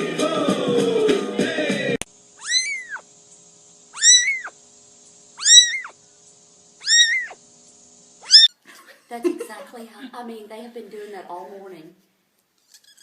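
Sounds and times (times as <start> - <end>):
cat meowing: 2.4 - 3.0, 4.0 - 4.5, 5.4 - 6.0, 6.8 - 7.4, 8.2 - 8.5.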